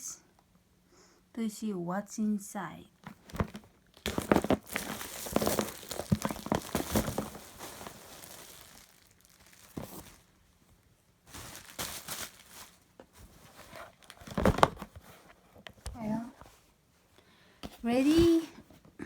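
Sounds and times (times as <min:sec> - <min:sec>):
cardboard box tearing and crinkling: 0:03.1 - 0:10.3, 0:11.3 - 0:12.8.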